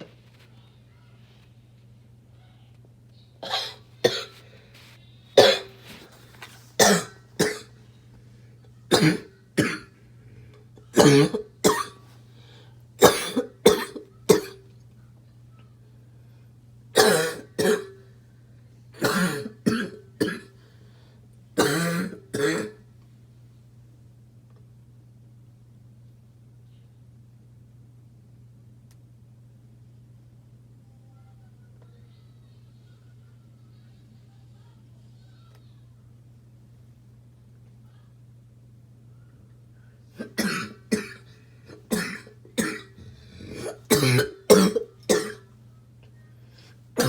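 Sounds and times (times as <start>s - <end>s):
harsh barking cough: 3.4s - 4.4s, 5.4s - 5.7s, 6.8s - 7.7s, 8.9s - 9.9s, 10.9s - 12.0s, 13.0s - 14.6s, 17.0s - 17.9s, 19.0s - 20.5s, 21.6s - 22.8s, 40.2s - 45.4s.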